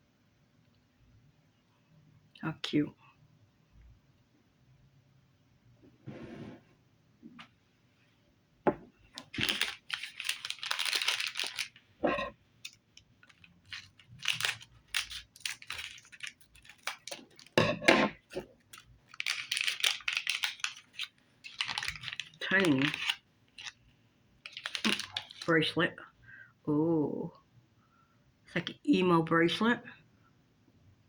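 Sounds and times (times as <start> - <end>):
plastic packaging crinkling and tearing: 9.2 - 11.9, 12.6 - 25.5.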